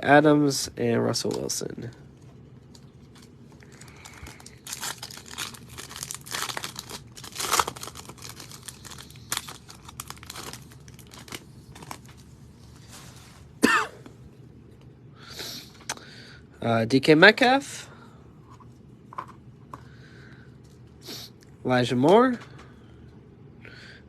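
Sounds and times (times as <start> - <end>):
plastic wrapper crinkling and tearing: 2.7 - 12.4
person coughing: 13.6 - 14.1.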